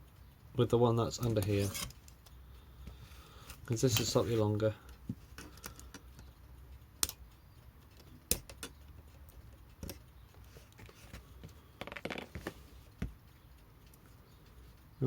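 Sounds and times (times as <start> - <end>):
clicking and scraping: 1.2 - 2.3.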